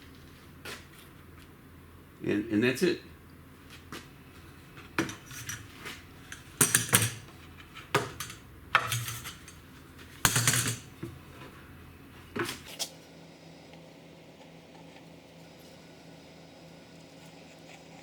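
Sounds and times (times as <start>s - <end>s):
bar clamps clattering: 8.0s - 9.6s.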